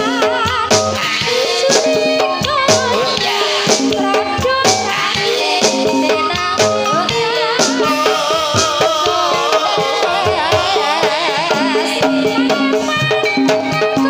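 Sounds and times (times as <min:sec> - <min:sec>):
high wavering melody: 0:05.8 - 0:14.0.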